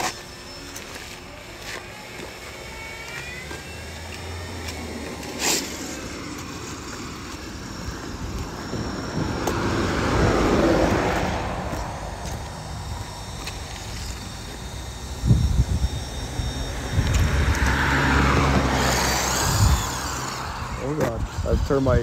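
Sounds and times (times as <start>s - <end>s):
electric motor whine: 0.0s - 22.0s.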